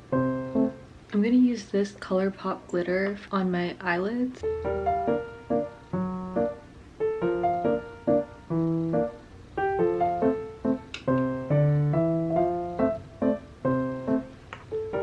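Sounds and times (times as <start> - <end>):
light piano tune: 0.0 - 1.2, 4.4 - 15.0.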